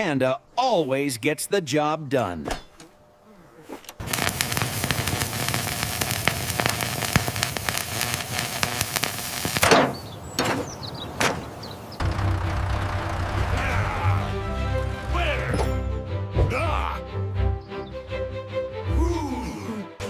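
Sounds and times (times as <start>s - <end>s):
crackling clatter of rapid clicks: 4.0s - 9.7s
music: 12.0s - 20.0s.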